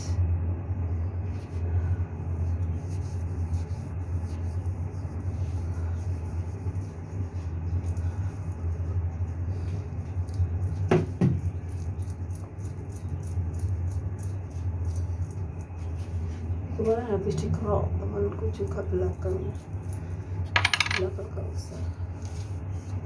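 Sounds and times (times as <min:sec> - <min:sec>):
steady low hum: 0:00.0 - 0:23.0
scraper strokes on skin: 0:01.2 - 0:10.9, 0:11.5 - 0:16.7, 0:21.9 - 0:23.0.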